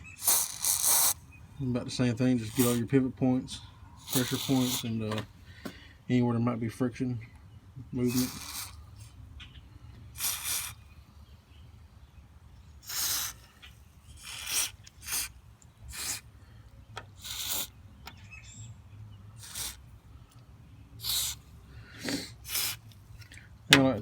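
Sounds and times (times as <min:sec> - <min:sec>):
aerosol can spraying: 0:00.2 - 0:01.2, 0:02.5 - 0:02.8, 0:04.0 - 0:04.8, 0:08.1 - 0:08.8, 0:10.2 - 0:10.8, 0:12.8 - 0:13.4, 0:14.2 - 0:16.2, 0:17.2 - 0:17.7, 0:19.4 - 0:19.8, 0:21.0 - 0:21.4, 0:22.1 - 0:23.0.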